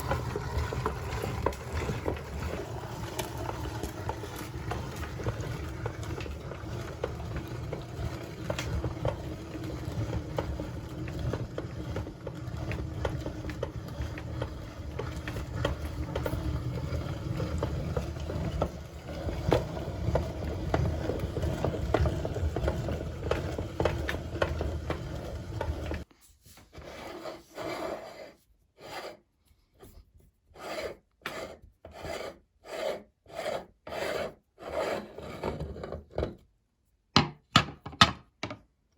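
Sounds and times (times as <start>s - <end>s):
meat grinder crushing ice cream: 0.0s - 26.1s.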